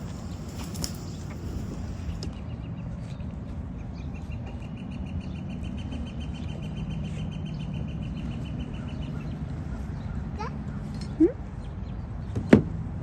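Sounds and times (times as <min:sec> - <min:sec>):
bird trilling: 0:00.0 - 0:02.2
steady low rumble: 0:00.0 - 0:02.2.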